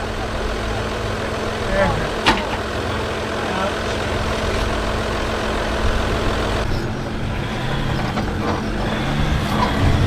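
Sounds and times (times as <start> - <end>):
off-road vehicle engine crawling: 0.0 - 10.0.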